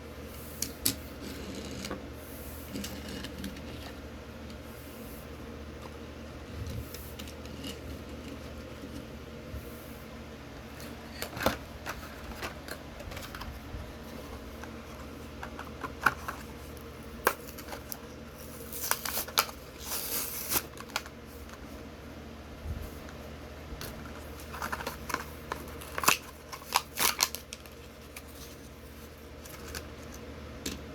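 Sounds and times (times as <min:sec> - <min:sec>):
crinkly packaging rustling: 0:10.6 - 0:21.8, 0:23.8 - 0:30.3.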